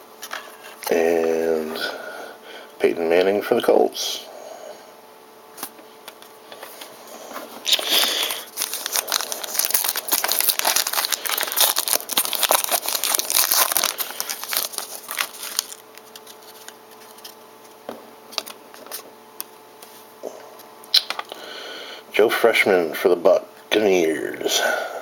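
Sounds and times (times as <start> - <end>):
wrapper crinkling and tearing: 7.6 - 17.4.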